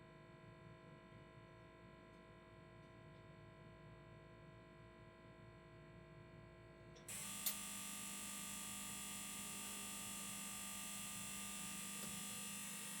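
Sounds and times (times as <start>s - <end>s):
computer fans whirring: 7.2s - 13.0s.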